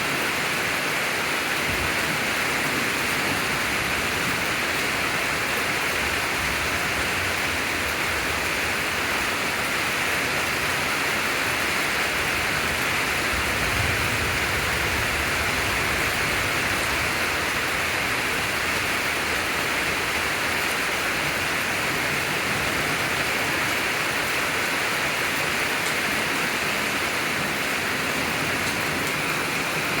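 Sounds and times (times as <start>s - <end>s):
heavy rain pouring: 0.0s - 30.0s
low thunder rumble: 13.2s - 20.4s.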